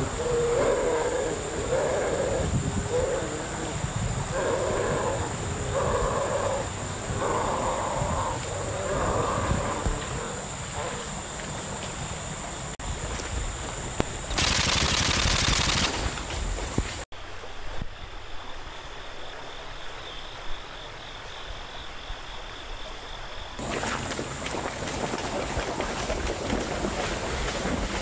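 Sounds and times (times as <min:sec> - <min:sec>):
background hiss: 0:00.0 - 0:26.2
automatic gunfire: 0:14.3 - 0:16.2.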